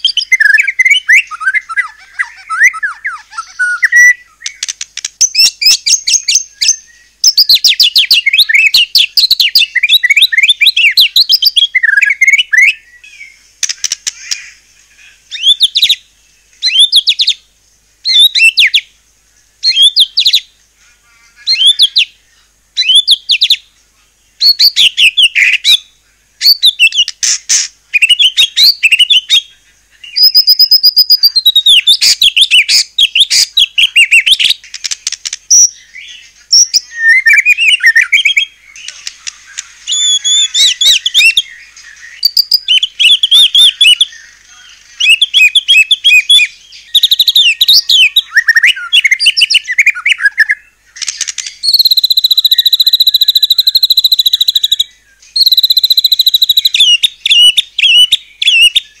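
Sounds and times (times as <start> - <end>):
bird singing whistles and chatter: 0.0 - 13.0, 16.6 - 17.4, 18.1 - 18.8, 19.6 - 20.5, 22.8 - 23.6, 24.4 - 29.5, 30.1 - 59.0.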